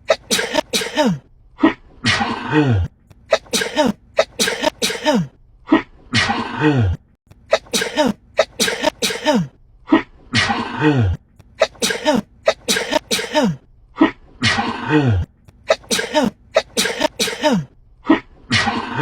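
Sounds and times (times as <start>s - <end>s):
woman sneezing: 0.0s - 1.2s, 3.3s - 5.3s, 7.5s - 9.5s, 11.6s - 13.6s, 15.7s - 17.7s.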